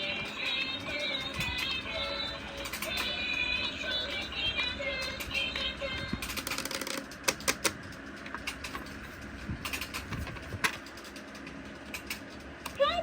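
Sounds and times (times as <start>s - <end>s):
toy electronic song: 0.0s - 6.2s
plastic toy and packaging clicking: 0.2s - 9.0s, 9.6s - 12.8s.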